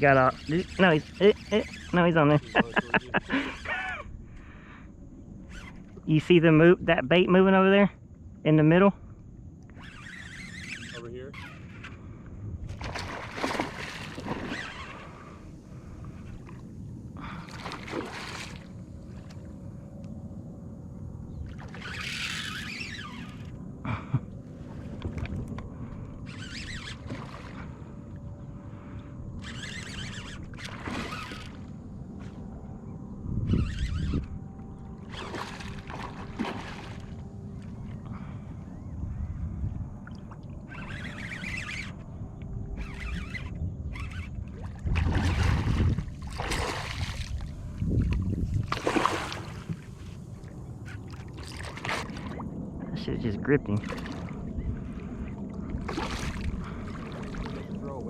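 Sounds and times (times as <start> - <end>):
water splashing against a kayak: 12.7 - 16.6, 17.2 - 19.4, 29.5 - 31.7, 35.1 - 37.8, 44.1 - 52.6, 53.7 - 58.0
wind on microphone: 21.2 - 58.0.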